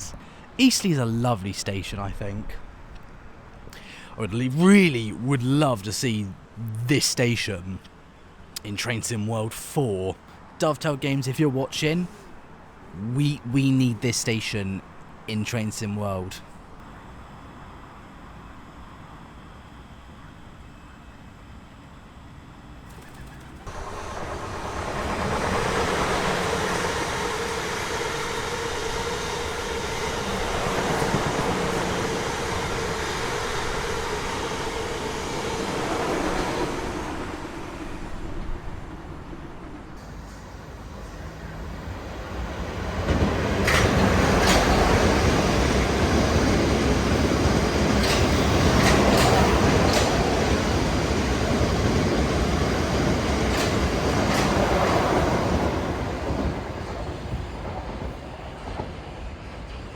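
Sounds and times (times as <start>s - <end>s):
train rail running noise: 0.0s - 59.9s
wheels clacking over rail joints: 42.6s - 59.2s.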